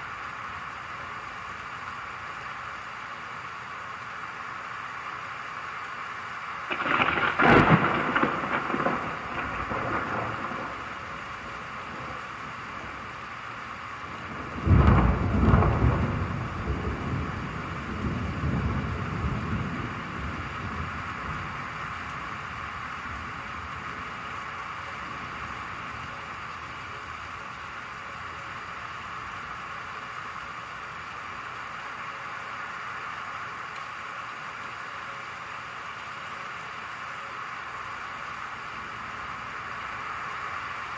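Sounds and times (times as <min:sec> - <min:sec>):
steady rain: 0:00.0 - 0:40.9
thunder clap rumbling: 0:06.7 - 0:13.3, 0:14.1 - 0:24.4.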